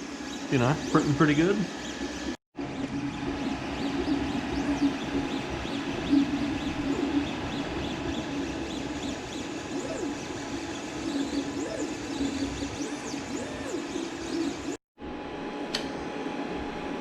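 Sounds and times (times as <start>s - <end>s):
printer steady hum: 0.0s - 14.8s
stepper motors whining chirps: 0.0s - 14.8s.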